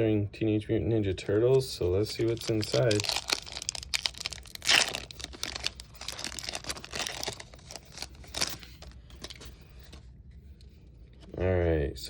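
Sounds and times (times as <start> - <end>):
foil pack tearing and crinkling: 2.1 - 9.4.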